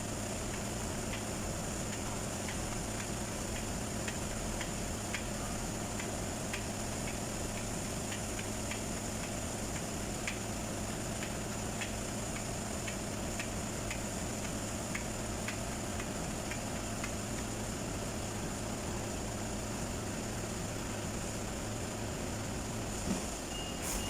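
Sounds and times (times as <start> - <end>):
mechanical hum with high whine: 0.0 - 24.0
light irregular ticks: 0.3 - 17.5.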